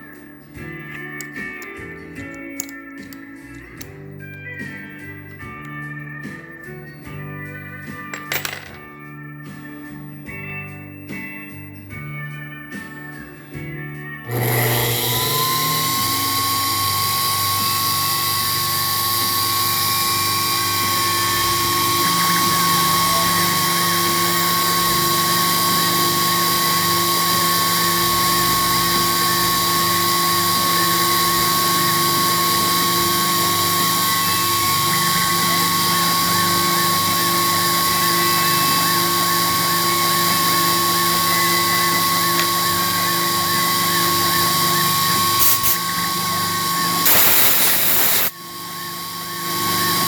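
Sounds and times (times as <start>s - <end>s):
quiet background music: 0.0s - 50.0s
milling machine spindle whine: 14.2s - 50.0s.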